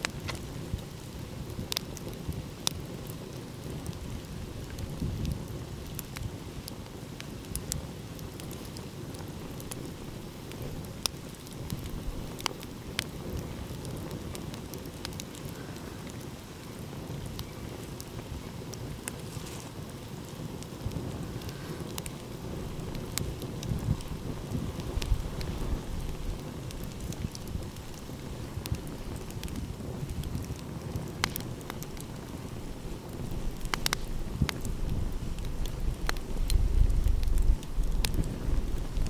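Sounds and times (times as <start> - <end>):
wood fire crackling and popping: 0.0 - 39.0.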